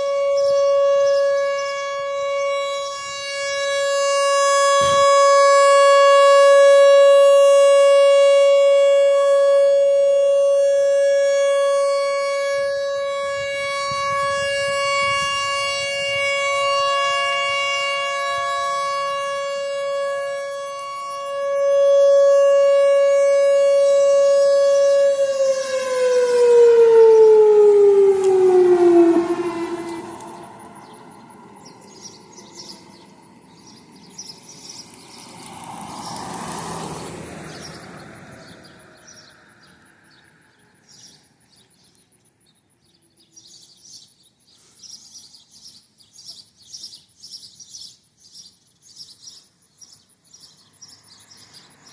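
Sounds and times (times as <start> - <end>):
warning siren steady tone: 0.0 - 41.5.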